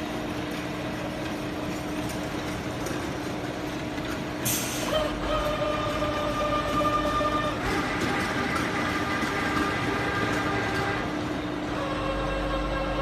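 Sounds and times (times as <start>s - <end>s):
machining centre mechanical hum: 0.0s - 13.0s
steady machine whine: 0.0s - 13.0s
air hiss burst: 4.4s - 4.9s.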